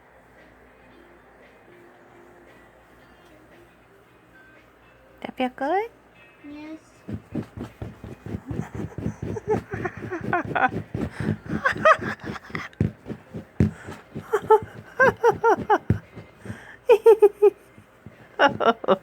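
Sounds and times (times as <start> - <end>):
child giggling: 13.9 - 17.6.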